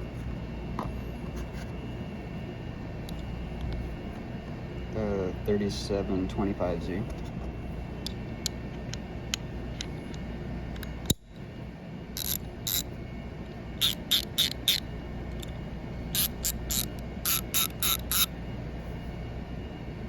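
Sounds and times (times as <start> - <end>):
ratchet pawl clicking: 12.2 - 12.9, 13.8 - 14.8, 16.1 - 18.3.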